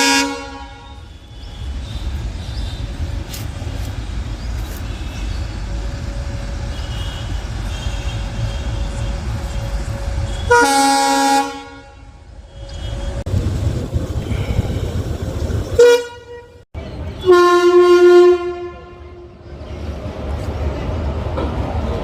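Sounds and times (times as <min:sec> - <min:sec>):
locomotive horn blast: 0:00.0 - 0:02.2, 0:05.9 - 0:13.2, 0:15.8 - 0:16.6, 0:17.2 - 0:19.4
moving train rumble: 0:00.0 - 0:22.0.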